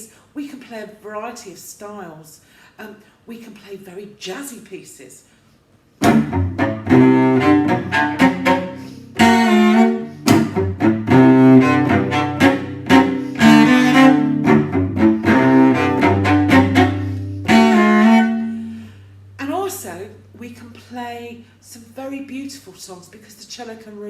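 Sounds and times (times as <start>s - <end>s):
solo cello playing jazz: 6.0s - 19.5s.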